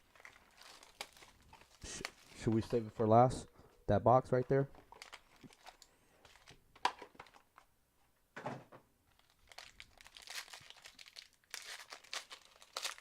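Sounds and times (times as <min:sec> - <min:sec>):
plastic wrapping crinkling: 0:00.0 - 0:03.0, 0:04.8 - 0:07.4, 0:09.1 - 0:13.0.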